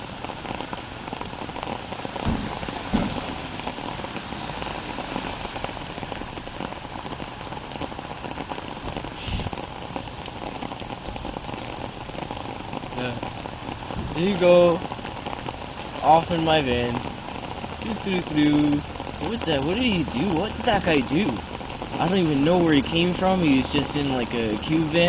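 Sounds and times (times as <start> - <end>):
steady rain falling: 0.0 - 25.0
dull thumps: 2.2 - 3.5.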